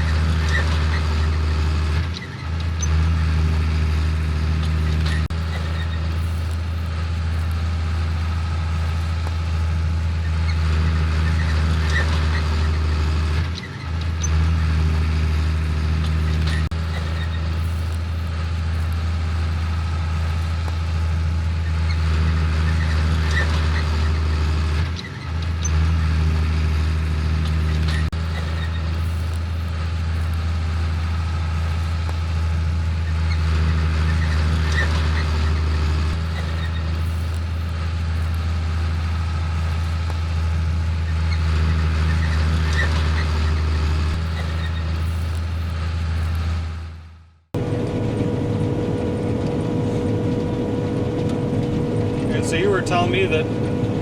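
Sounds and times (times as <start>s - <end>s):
diesel farm machinery droning: 0.0s - 54.0s.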